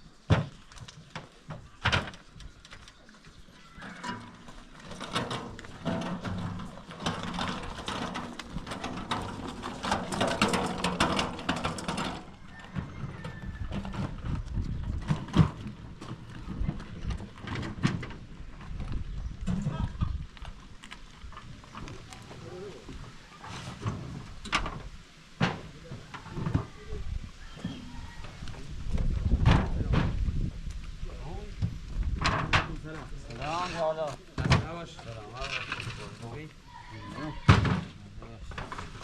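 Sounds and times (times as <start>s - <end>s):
animal sounds: 36.6s - 37.7s.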